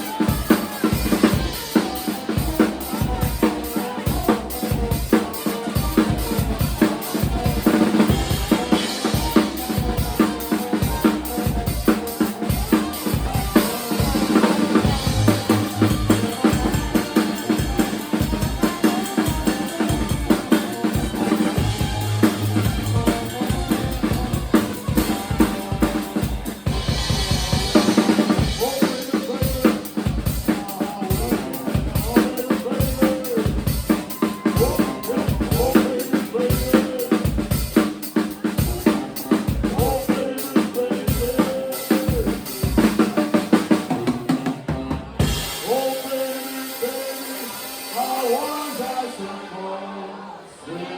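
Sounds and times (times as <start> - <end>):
drum kit hits: 0.0 - 35.8.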